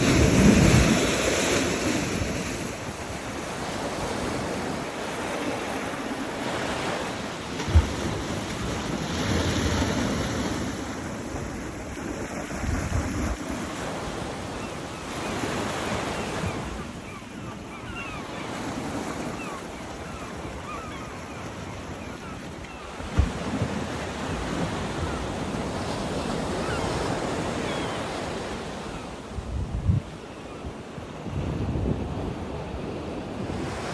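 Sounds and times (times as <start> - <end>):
ocean surf washing ashore: 0.0 - 14.5
wind blowing across microphone: 29.4 - 30.2.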